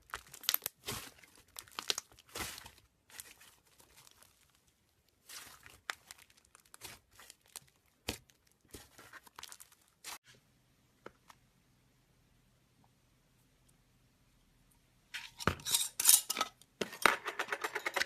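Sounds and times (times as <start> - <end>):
slime squished by hand: 0.0 - 4.6, 5.2 - 10.2.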